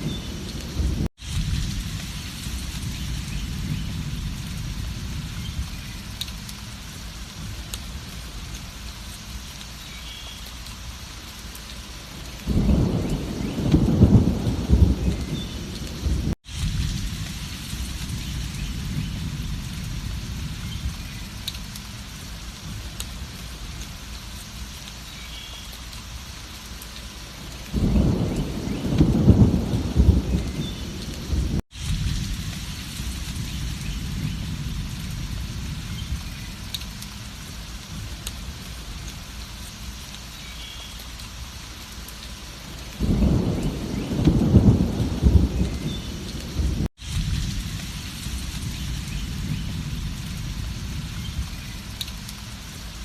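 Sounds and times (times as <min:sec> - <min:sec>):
low rolling thunder: 0:00.0 - 0:08.1, 0:12.4 - 0:21.5, 0:27.6 - 0:36.7, 0:43.0 - 0:53.0
heavy rain: 0:00.0 - 0:53.0.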